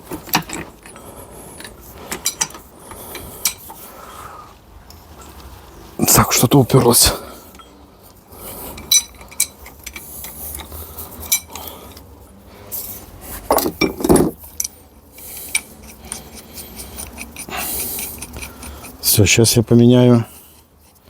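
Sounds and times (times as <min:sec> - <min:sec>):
metal tools clinking and scraping: 0:00.1 - 0:03.8, 0:07.5 - 0:07.8, 0:08.5 - 0:21.0.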